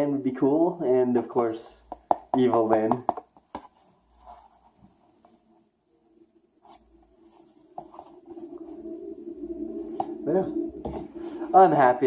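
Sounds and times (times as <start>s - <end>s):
soft scratchy rustling: 3.4s - 5.7s, 6.6s - 11.6s.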